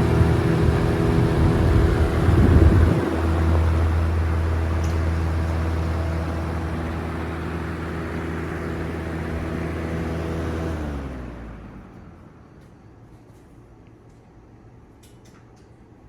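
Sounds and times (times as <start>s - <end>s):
box fan motor hum: 0.0s - 13.4s.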